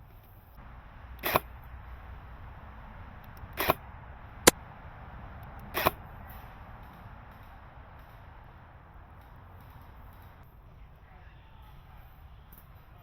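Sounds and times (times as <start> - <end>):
airsoft gun shots: 1.2 - 1.6, 3.5 - 3.8, 5.7 - 6.0.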